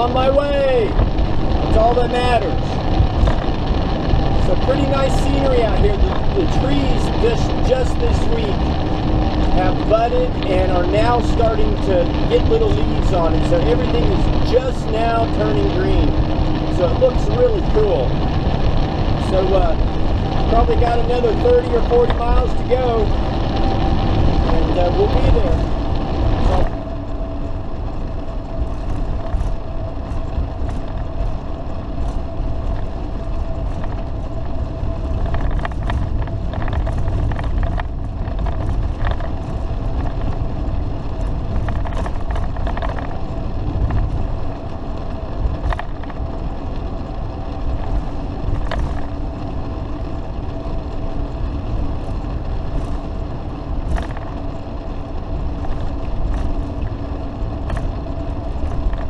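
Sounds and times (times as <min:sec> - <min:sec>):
engine and road drone: 0:00.0 - 0:59.0
faint steady whine: 0:00.0 - 0:59.0
small clicks and rattles: 0:02.2 - 0:59.0.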